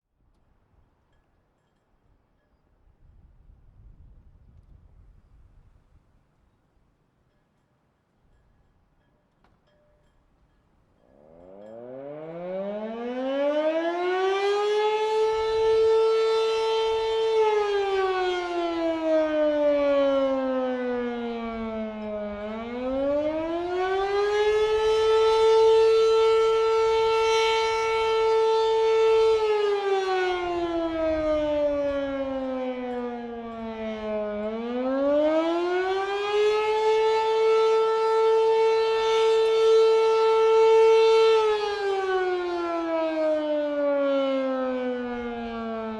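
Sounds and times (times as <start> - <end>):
wind on microphone: 2.9 - 6.1
warning siren wailing: 11.1 - 45.9.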